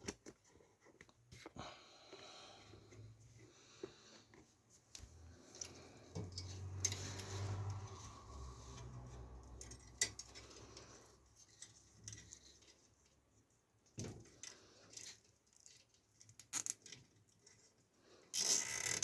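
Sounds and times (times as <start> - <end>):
small hard parts clicking: 4.9 - 7.4, 18.3 - 19.0.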